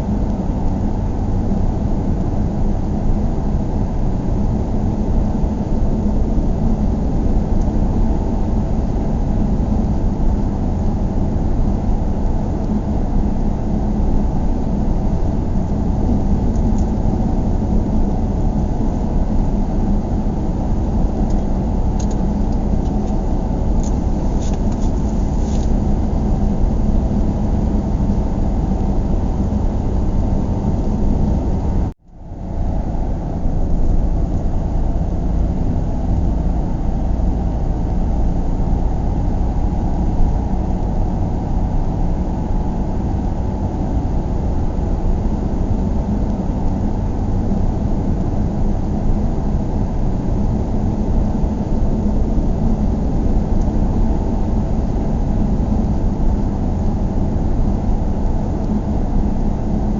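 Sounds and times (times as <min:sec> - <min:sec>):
car road and engine noise: 0:00.0 - 0:59.9
steady hum: 0:00.0 - 0:59.9.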